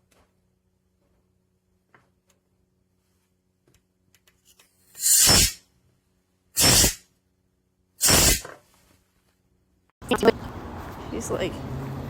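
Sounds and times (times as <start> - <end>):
compressed gas spray hisses: 5.0 - 5.6, 6.6 - 7.0, 8.0 - 8.5.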